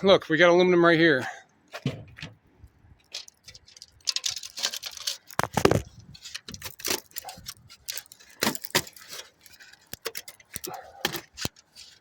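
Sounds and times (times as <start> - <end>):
metal clatter: 3.0 - 11.9
scrap aluminum rattling: 3.0 - 12.0.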